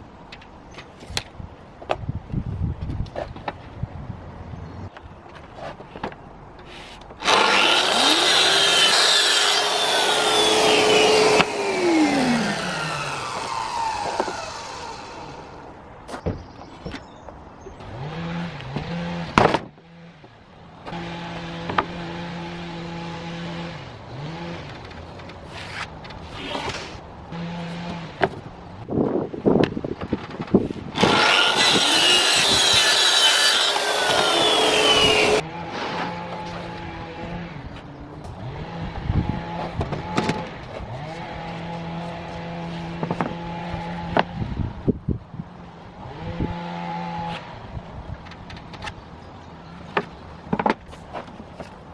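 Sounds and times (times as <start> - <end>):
power tool motor: 7.2 - 15.4, 31.0 - 35.4.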